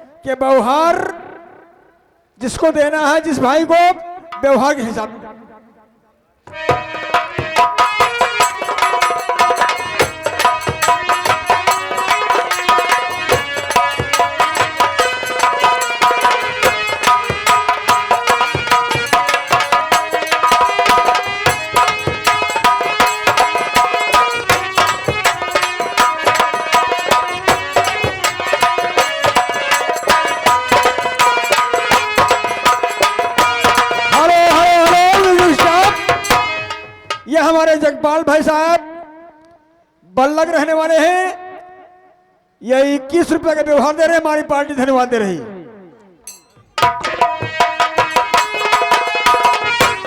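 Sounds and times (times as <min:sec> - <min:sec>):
fast hand drum strokes: 0:06.5 - 0:37.3, 0:46.3 - 0:50.0
melody instrument holding notes: 0:06.6 - 0:37.1.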